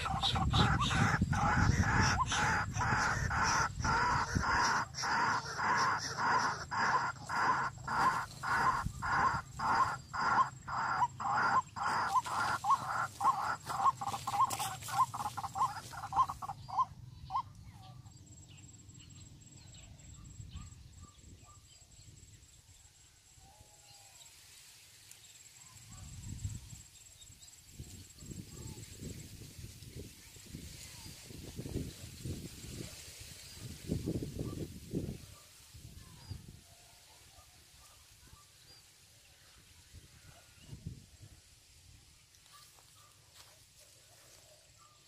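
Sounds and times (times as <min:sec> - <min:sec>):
bird calling loudly: 0:00.0 - 0:18.0.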